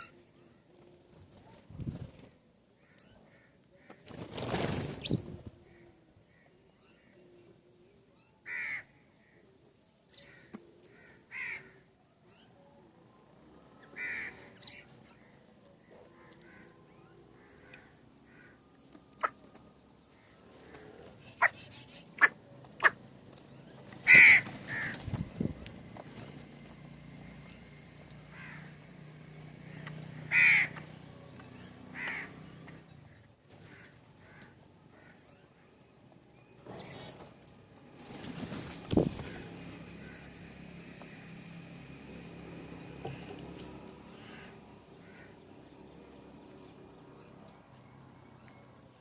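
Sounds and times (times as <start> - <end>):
faint bird calls: 2.7 - 12.8, 13.7 - 28.9, 43.0 - 47.5
loud short bird calls: 8.4 - 9.4, 10.1 - 12.4, 13.9 - 15.4, 20.2 - 23.0, 23.9 - 25.3, 28.3 - 28.8, 29.7 - 30.9, 31.9 - 35.3.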